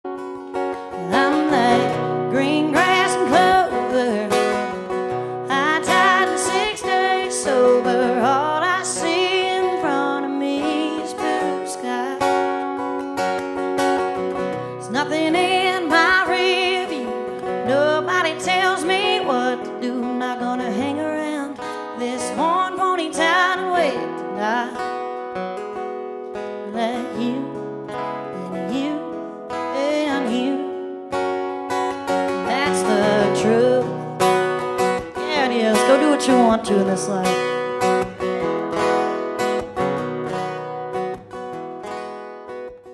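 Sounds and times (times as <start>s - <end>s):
person singing wavering notes: 0.0s - 13.0s, 32.2s - 38.0s
person singing with vibrato: 0.0s - 41.1s
acoustic guitar: 0.0s - 42.9s.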